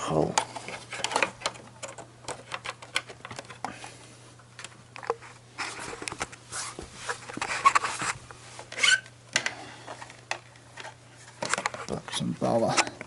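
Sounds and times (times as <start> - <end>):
steady low hum: 0.0 - 13.0
cables scraping and rustling: 0.2 - 9.1
connectors clicking and knocking: 0.3 - 3.8.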